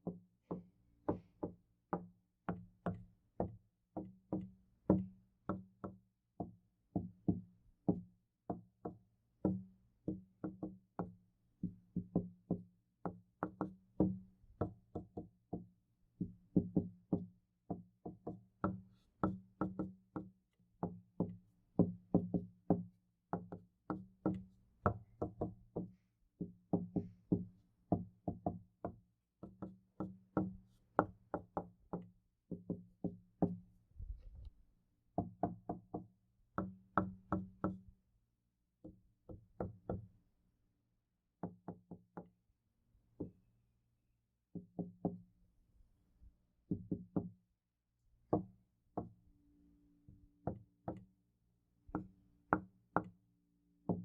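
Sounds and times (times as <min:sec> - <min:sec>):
knocking on a door: 0:16.6 - 0:33.6, 0:44.6 - 0:45.2, 0:46.7 - 0:47.3.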